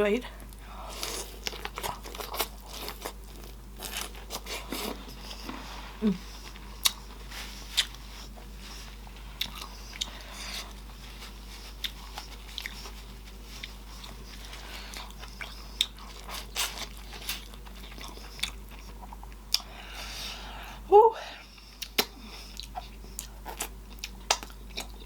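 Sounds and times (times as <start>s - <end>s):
chewing with wet lip smacks: 6.8s - 8.5s, 9.4s - 10.8s, 11.4s - 19.7s, 21.5s - 25.0s.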